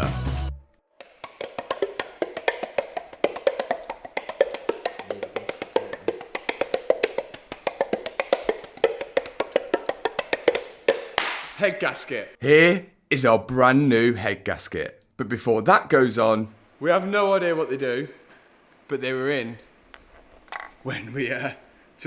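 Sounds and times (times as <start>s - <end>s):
background music: 0.0s - 11.2s
wood block taps: 1.0s - 11.4s.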